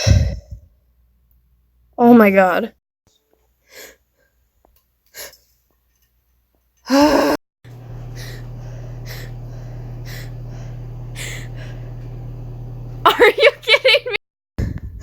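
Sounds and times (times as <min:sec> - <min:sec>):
steady low hum: 0:07.7 - 0:15.0
breathy gasping inhalations: 0:08.0 - 0:11.9.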